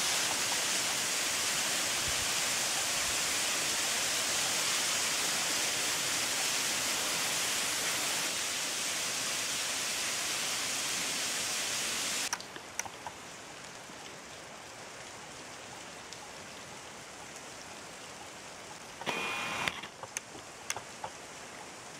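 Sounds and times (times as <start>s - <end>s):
water falling hiss: 0.0s - 16.2s
faint ticks: 19.6s - 21.2s.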